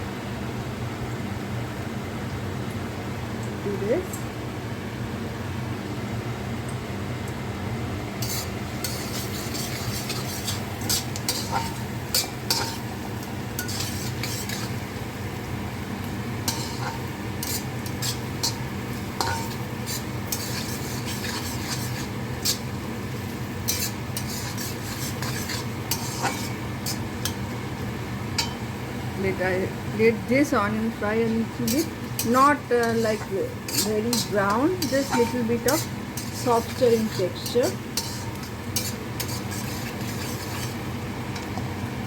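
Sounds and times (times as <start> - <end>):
food sizzling in hot oil: 8.0 - 42.0
utensil scraping and knocking pan: 8.2 - 12.8, 13.6 - 14.8, 19.2 - 22.7, 23.7 - 27.4, 31.7 - 40.8.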